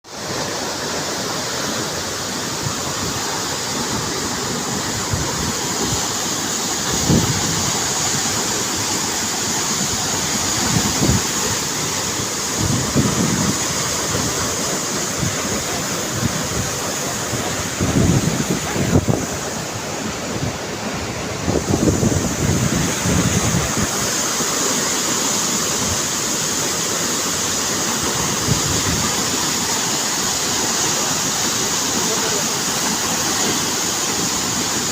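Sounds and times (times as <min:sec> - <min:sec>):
waterfall rushing: 0:00.0 - 0:34.9
wind buffeting microphone: 0:15.2 - 0:24.0.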